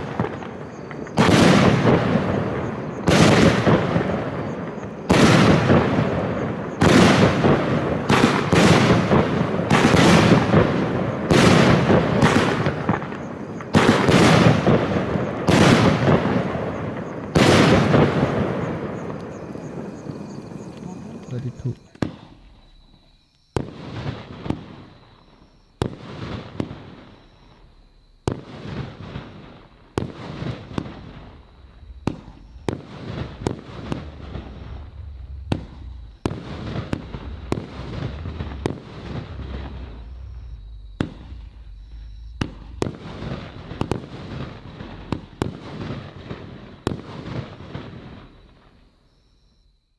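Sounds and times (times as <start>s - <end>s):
firework shells bursting with crackle: 0.0s - 49.3s
firework launch thumps: 27.5s - 47.4s.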